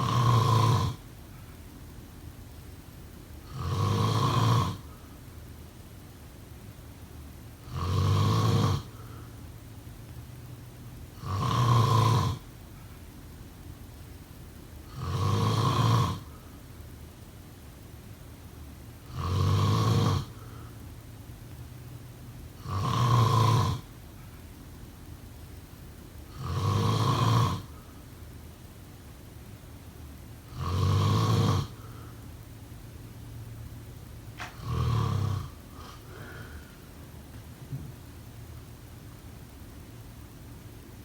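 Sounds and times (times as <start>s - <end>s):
person snoring: 0.0s - 1.0s, 3.5s - 5.0s, 7.6s - 9.3s, 11.2s - 12.5s, 14.9s - 16.4s, 19.1s - 20.8s, 22.6s - 23.9s, 26.3s - 27.8s, 30.5s - 32.2s, 34.4s - 36.8s
low rasp on the breath: 34.4s - 36.9s.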